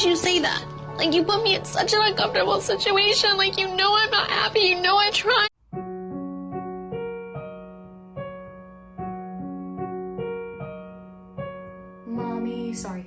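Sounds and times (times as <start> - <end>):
slow electric piano music: 5.6 - 13.0.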